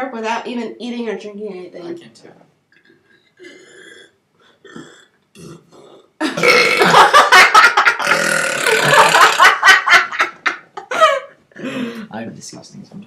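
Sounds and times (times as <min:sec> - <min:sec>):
loud human burp: 0:02.8 - 0:07.1, 0:08.0 - 0:09.5.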